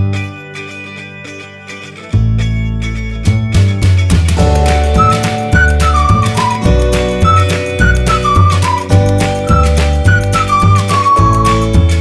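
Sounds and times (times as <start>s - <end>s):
background music with sliding melody: 3.0s - 12.0s.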